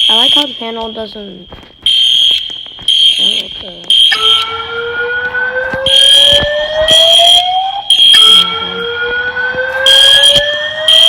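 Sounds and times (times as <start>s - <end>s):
shrill alarm beeps: 0.0s - 1.1s, 1.9s - 11.0s
rising whoop alarm tone: 4.1s - 11.0s.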